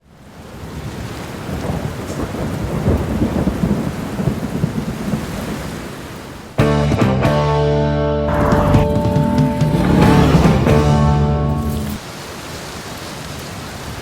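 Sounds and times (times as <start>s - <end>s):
heavy rain: 0.1s - 6.6s, 8.4s - 14.0s
thunder rumbling: 1.5s - 5.5s
music: 6.6s - 12.0s.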